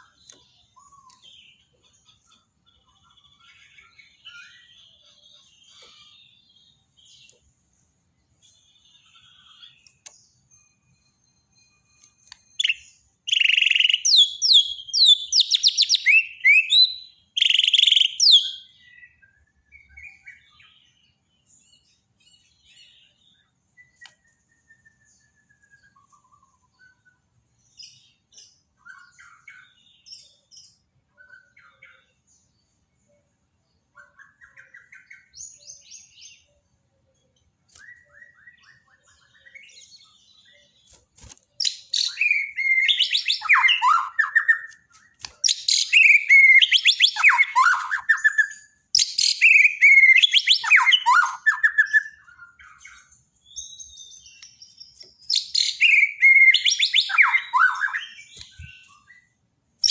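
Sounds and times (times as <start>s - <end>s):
bird singing whistled phrases: 12.3s - 20.6s, 23.4s - 27.2s, 37.8s - 40.6s, 41.6s - 59.9s.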